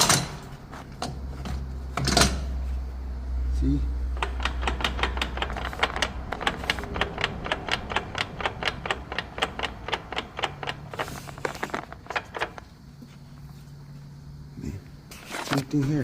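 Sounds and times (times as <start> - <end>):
rapid mechanical clicking: 4.2 - 12.7.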